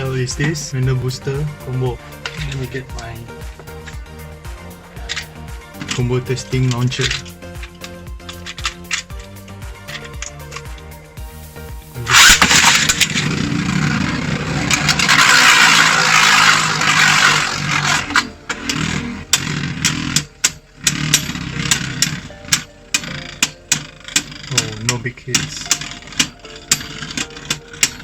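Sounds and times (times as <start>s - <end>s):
background music: 0.0s - 28.0s
spinning tops scraping whir: 0.0s - 28.0s
ripcord launcher ripping: 12.1s - 20.2s
spinning tops clicking together: 14.7s - 28.0s.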